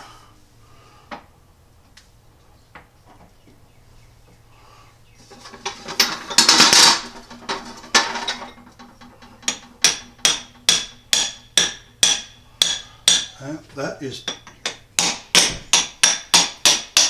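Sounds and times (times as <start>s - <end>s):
metallic rattle and scrape: 5.2s - 13.4s
ringing metallic taps: 7.5s - 13.4s, 14.1s - 17.0s.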